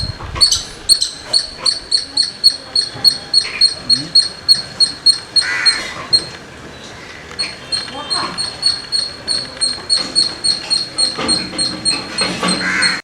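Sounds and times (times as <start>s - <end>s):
lower rough squirrel call: 0.0s - 6.3s
squirrel chirping: 0.0s - 6.4s, 7.2s - 13.0s.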